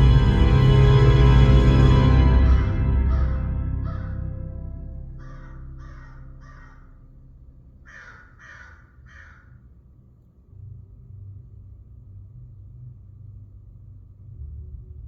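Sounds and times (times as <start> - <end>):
low hum: 0.0 - 15.0
low rumble: 0.0 - 15.0
crow cawing: 3.1 - 4.2, 5.2 - 7.0, 7.9 - 9.6.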